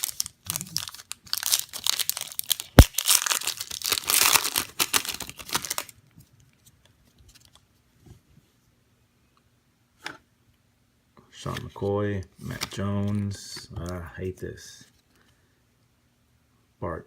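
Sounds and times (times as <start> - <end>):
foil wrapper crinkling and tearing: 0.0 - 6.0.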